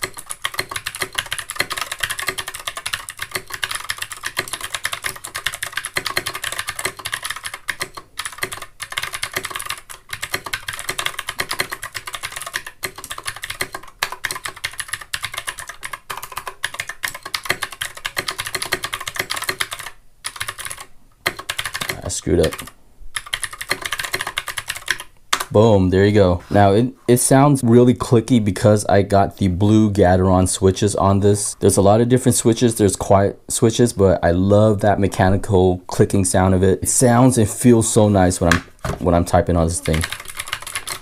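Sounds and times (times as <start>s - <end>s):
fast typing on mechanical keyboard: 0.0s - 25.5s, 39.8s - 41.0s.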